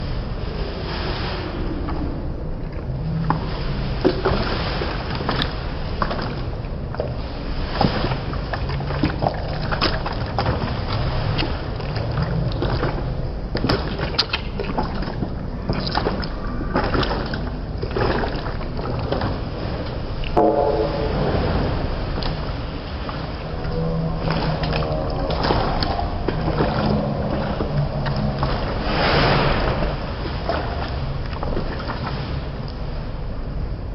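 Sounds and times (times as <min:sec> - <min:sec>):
steady low rumble: 0:00.0 - 0:33.9
water sloshing and splashing: 0:00.0 - 0:33.9
sharp splashes: 0:07.2 - 0:32.8.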